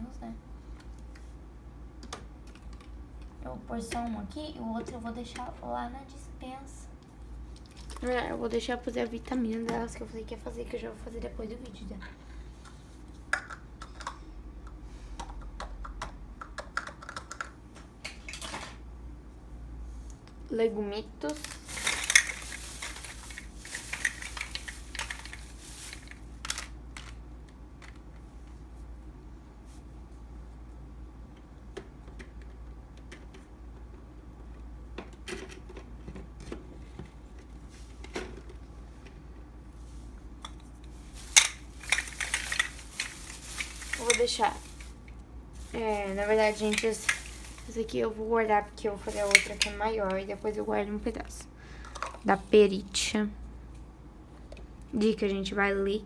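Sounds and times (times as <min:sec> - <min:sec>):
grocery packaging clicks and taps: 0:12.6 - 0:18.2
packaging rustle: 0:21.3 - 0:27.2, 0:40.8 - 0:48.1, 0:48.9 - 0:50.6.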